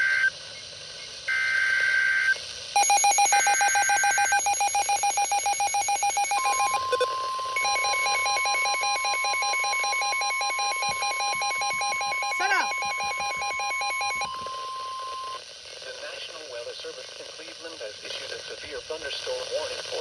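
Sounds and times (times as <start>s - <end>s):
buzzing two-pitch data tones: 2.8s - 15.4s
rapid electronic alarm beeping: 2.8s - 15.4s
steady single-pitch attention tone: 2.8s - 15.4s.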